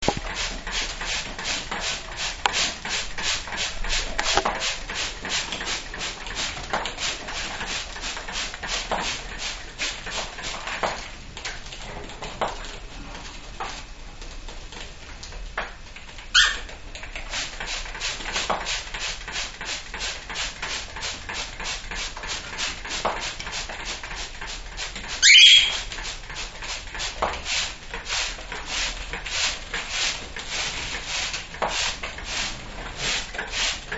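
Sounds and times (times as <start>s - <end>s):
water spray pattering: 0.0s - 11.1s
cockatiel calls: 16.4s - 16.7s, 25.2s - 25.9s.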